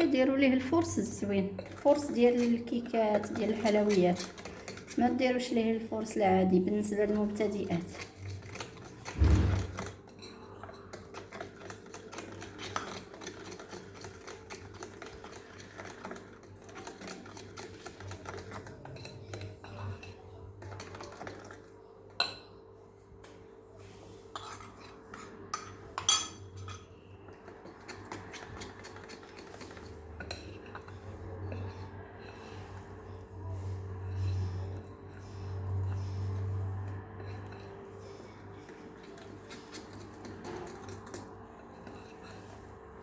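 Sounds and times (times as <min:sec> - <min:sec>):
utensil scraping a bowl: 0:00.0 - 0:22.2, 0:23.2 - 0:43.0.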